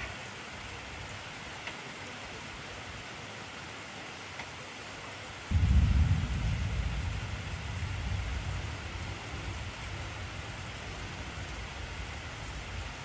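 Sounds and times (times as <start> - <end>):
heavy rain hissing: 5.5 - 13.0
low thunder rumble: 5.5 - 13.0.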